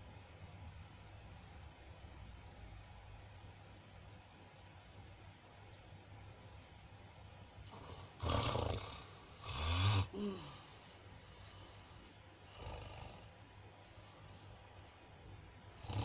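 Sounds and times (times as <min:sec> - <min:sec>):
person snoring: 0:07.7 - 0:10.8, 0:12.4 - 0:13.3, 0:15.8 - 0:16.0.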